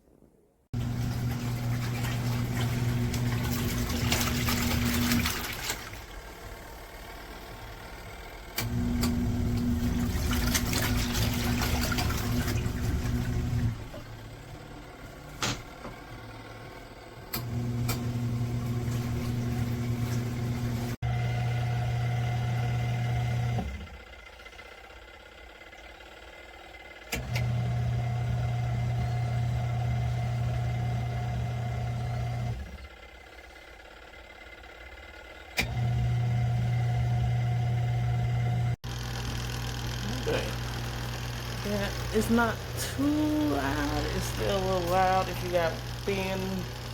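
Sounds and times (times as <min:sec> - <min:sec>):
washing machine motor humming: 0:00.7 - 0:46.9
water sloshing in tub: 0:00.8 - 0:06.3, 0:08.8 - 0:14.2, 0:18.4 - 0:21.0, 0:40.2 - 0:46.9.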